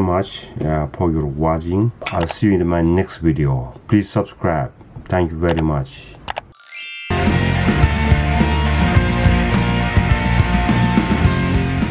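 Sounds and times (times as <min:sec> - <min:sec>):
rock music with drums and guitar: 0:07.1 - 0:11.9.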